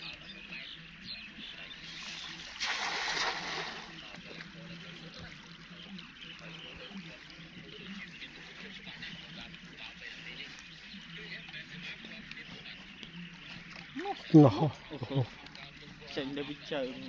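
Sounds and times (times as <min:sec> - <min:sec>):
cast net splashing on water: 0:01.8 - 0:04.4.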